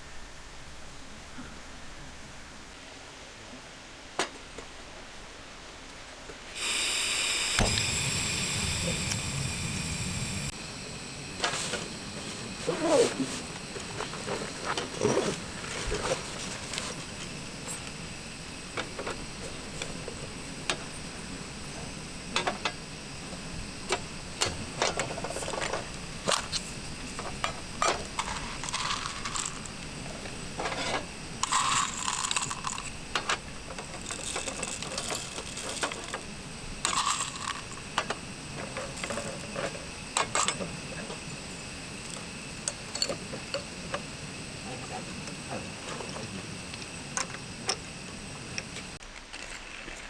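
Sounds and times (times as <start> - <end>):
gear clicking and clinking: 30.6 - 36.3.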